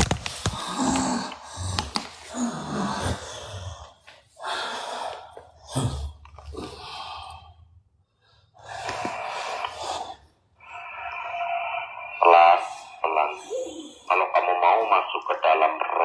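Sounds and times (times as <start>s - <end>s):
man breathing heavily: 0.0s - 11.8s.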